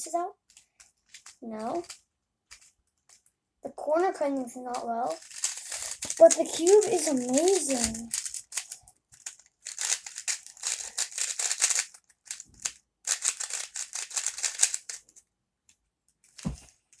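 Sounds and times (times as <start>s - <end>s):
puzzle cube clicking: 4.7s - 15.0s.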